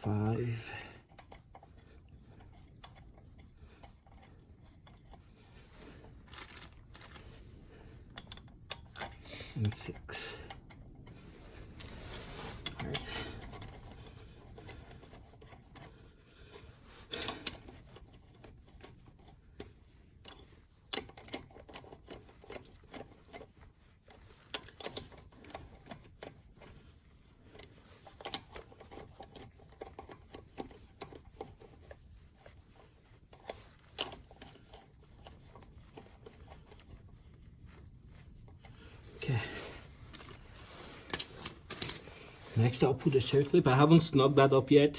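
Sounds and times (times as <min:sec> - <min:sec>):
hand tools clinking on metal: 0:40.2 - 0:44.5.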